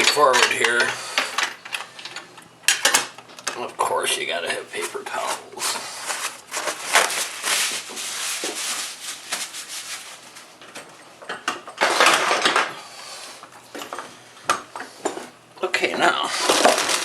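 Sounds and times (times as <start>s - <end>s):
paper towels rustling: 4.4s - 10.6s, 16.3s - 17.0s.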